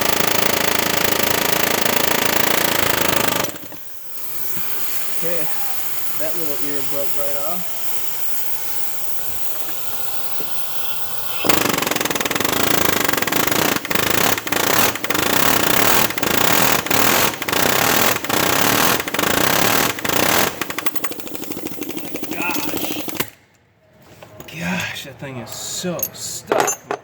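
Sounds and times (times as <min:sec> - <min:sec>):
pneumatic air hammer rattling: 0:00.0 - 0:23.4.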